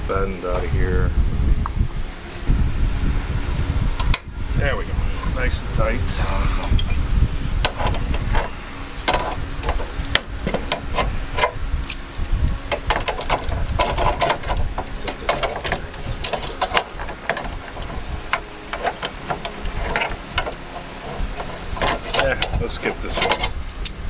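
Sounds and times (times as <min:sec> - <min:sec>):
hand tools on sheet metal: 0:07.6 - 0:12.0, 0:12.7 - 0:23.6.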